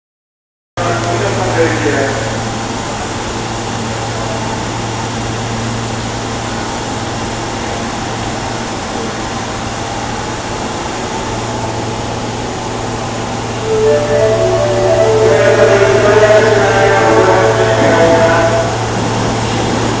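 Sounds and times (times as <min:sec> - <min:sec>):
subway train humming: 0:00.8 - 0:20.0
stepped tones of held pitches: 0:13.6 - 0:17.2.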